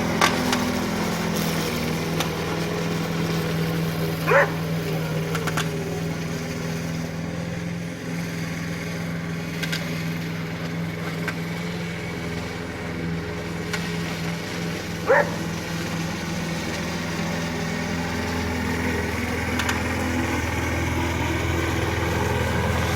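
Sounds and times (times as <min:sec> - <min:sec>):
lawn mower engine running: 0:00.0 - 0:22.9
dog barking: 0:04.3 - 0:04.6, 0:15.1 - 0:15.4.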